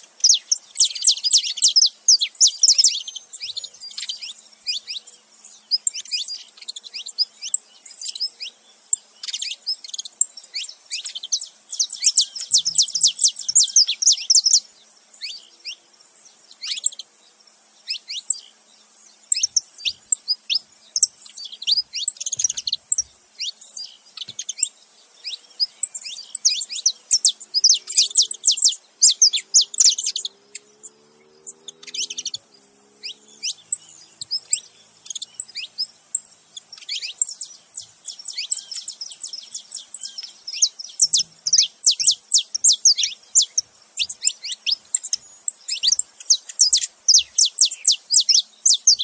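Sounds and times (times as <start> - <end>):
finches chirping and singing: 0.0 - 49.0.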